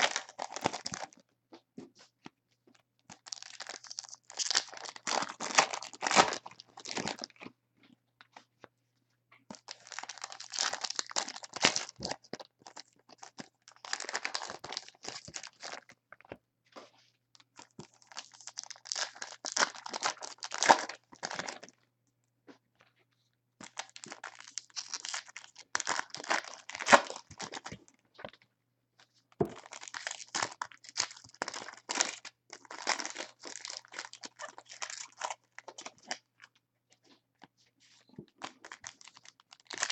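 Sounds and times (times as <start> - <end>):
card pack wrappers crinkling: 0.0 - 1.2, 3.1 - 7.4, 9.6 - 15.9, 17.6 - 21.7, 23.6 - 27.8, 29.4 - 36.3, 38.0 - 39.9.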